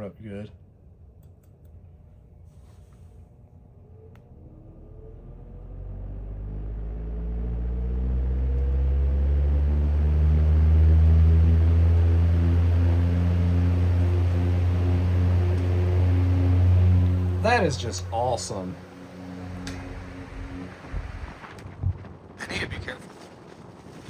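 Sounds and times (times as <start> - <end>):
table fan starting up: 3.8 - 22.3.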